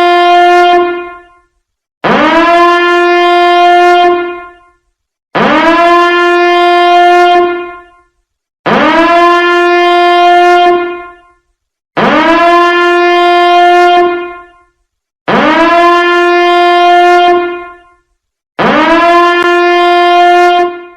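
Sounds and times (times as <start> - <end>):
horn-like alarm tone sweeping up: 18.6 - 20.9.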